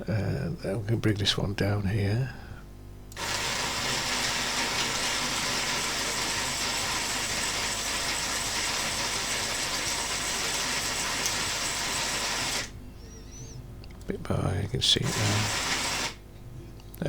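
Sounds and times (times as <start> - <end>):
robot arm motor whirring: 3.2 - 12.8, 15.0 - 16.2.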